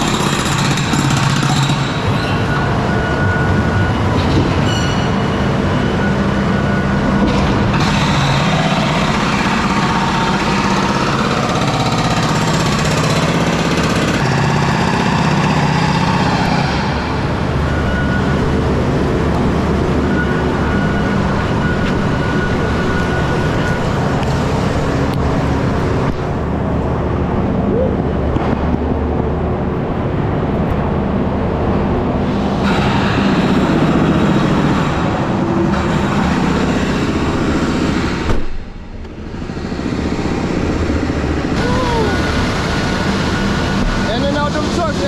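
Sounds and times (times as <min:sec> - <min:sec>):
truck diesel engine running: 0:05.6 - 0:45.0.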